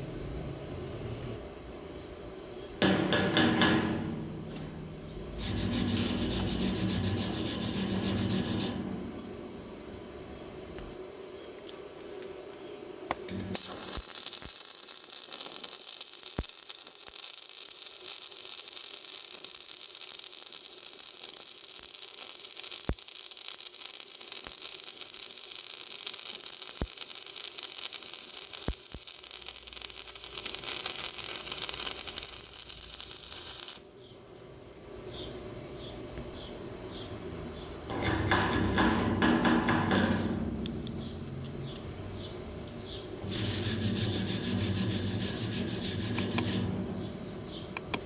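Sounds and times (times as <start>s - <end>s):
welding arc crackling and hissing: 5.3s - 9.1s, 13.1s - 34.0s, 43.2s - 48.0s.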